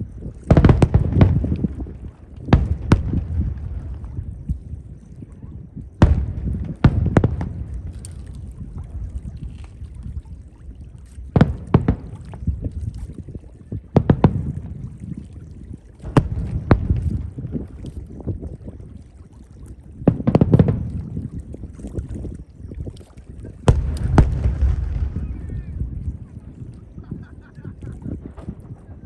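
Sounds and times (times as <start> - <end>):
fireworks bursting: 0.5 - 4.5, 6.0 - 9.0, 11.4 - 12.6, 14.0 - 14.9, 16.0 - 17.7, 20.1 - 21.1, 23.7 - 26.4
low rumble and echo: 23.7 - 29.0.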